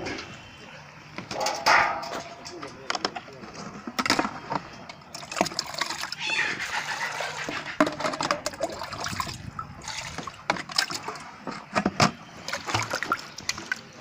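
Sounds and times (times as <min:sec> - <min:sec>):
objects clicking and knocking: 0:01.2 - 0:06.2, 0:07.5 - 0:08.7
water splashing in a container: 0:05.0 - 0:14.0.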